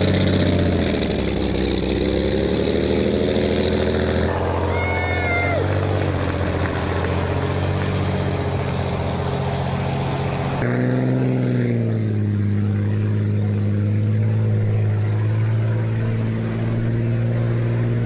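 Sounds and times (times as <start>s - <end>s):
boat engine droning: 0.0s - 18.0s.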